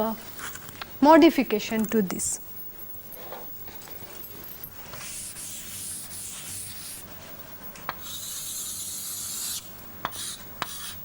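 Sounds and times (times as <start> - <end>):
pen scratching on paper: 5.0 - 7.0, 8.0 - 11.0.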